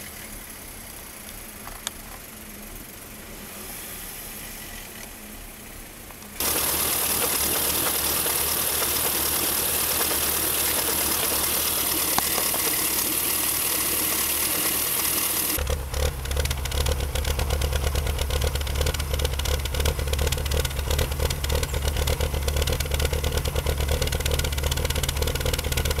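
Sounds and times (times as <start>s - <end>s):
steady hiss: 0.0s - 16.9s
car engine idling roughly: 6.4s - 26.0s.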